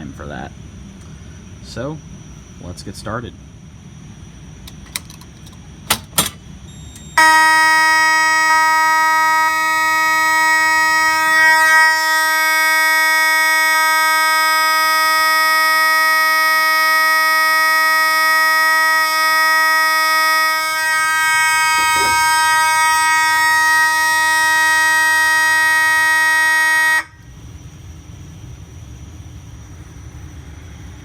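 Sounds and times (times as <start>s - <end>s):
pull station clicks: 4.6s - 7.2s
mechanical fire alarm horn: 5.9s - 27.4s.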